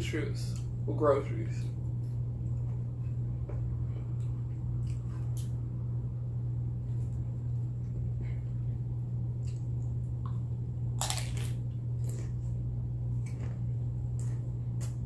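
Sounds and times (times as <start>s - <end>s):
low hum: 0.0s - 15.0s
chips being chewed: 9.4s - 12.6s, 13.2s - 15.0s.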